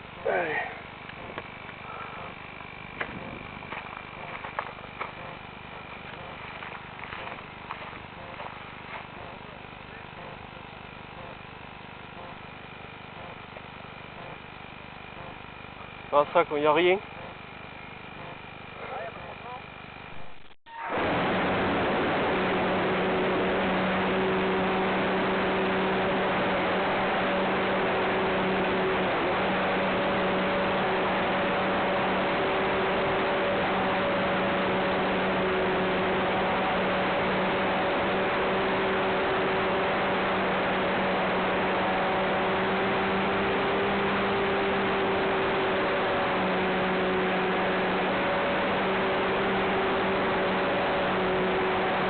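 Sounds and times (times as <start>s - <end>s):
airplane engine and propeller drone: 0.0s - 52.0s
wind noise: 3.0s - 3.8s.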